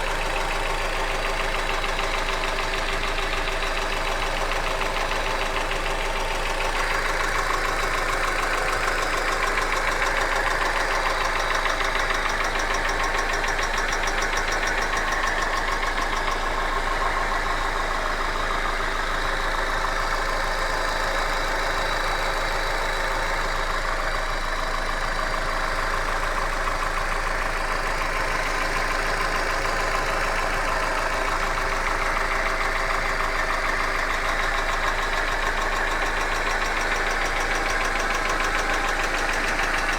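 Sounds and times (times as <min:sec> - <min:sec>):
car engine idling with knock: 0:00.0 - 0:39.9.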